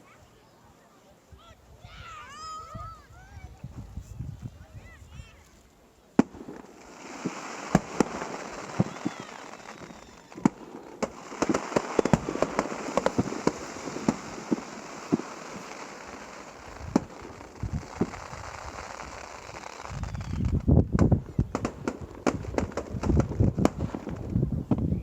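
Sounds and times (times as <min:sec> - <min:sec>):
fireworks bangs and crackles: 0:06.2 - 0:25.0.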